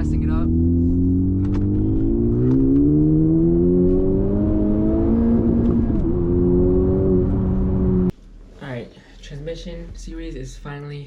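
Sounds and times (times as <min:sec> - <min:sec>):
car engine accelerating: 0:00.0 - 0:08.1.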